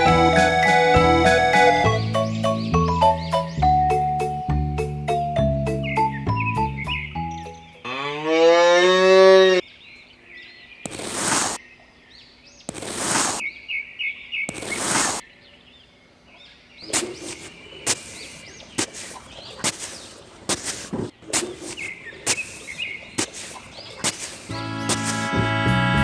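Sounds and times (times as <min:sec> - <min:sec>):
birds chirping faintly: 0:09.7 - 0:25.5
short bursts of hiss: 0:10.9 - 0:11.6, 0:12.7 - 0:13.4, 0:14.5 - 0:15.2, 0:16.8 - 0:25.5.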